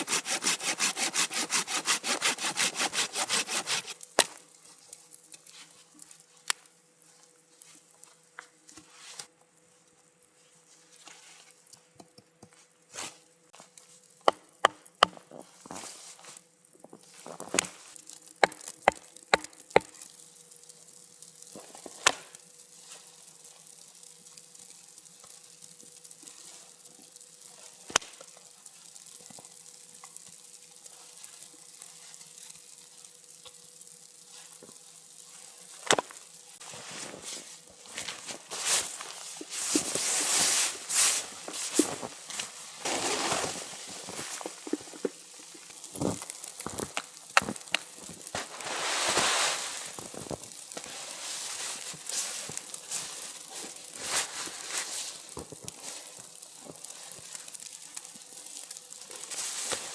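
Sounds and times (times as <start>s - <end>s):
hand saw cutting wood: 0.0s - 4.0s.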